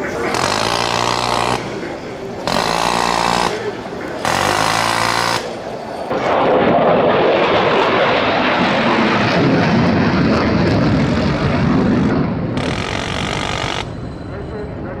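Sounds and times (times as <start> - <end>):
aircraft engine roar: 0.0 - 15.0.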